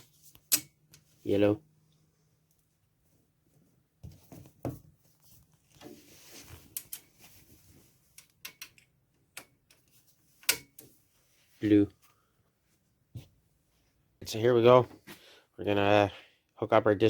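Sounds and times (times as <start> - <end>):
metal parts clicking and tapping: 0.0 - 1.1, 6.7 - 7.2, 8.1 - 10.9.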